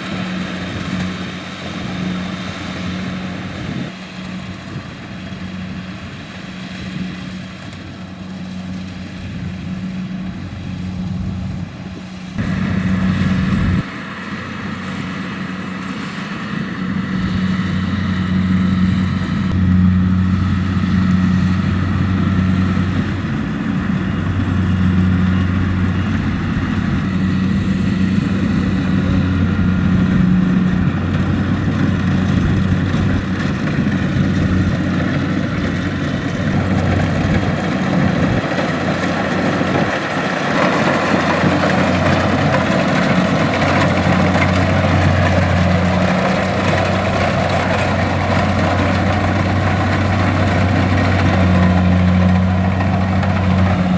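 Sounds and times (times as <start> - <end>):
combine harvester engine drone: 0.0 - 53.9.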